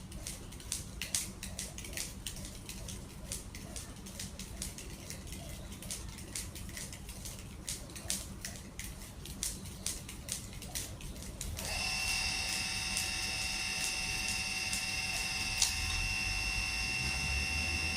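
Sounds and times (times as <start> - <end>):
crackling clicks: 0.0 - 16.3
low hum: 11.3 - 17.9
electric water pump whining: 11.5 - 17.9.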